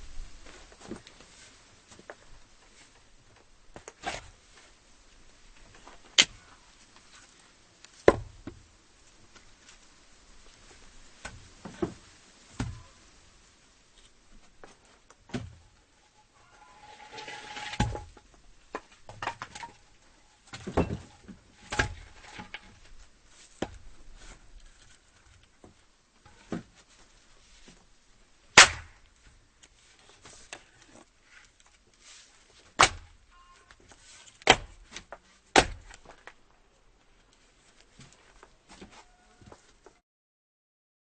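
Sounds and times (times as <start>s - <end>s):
axe chopping wood: 8.0s - 8.3s, 21.6s - 22.1s, 28.6s - 29.0s, 32.8s - 33.1s, 34.4s - 36.1s
split wood pieces knocking: 34.4s - 36.4s.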